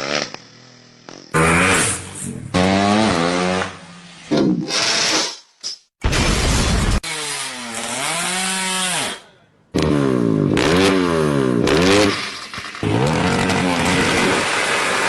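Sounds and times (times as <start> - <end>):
motorcycle engine revving hard: 0.0 - 4.0, 9.8 - 15.0.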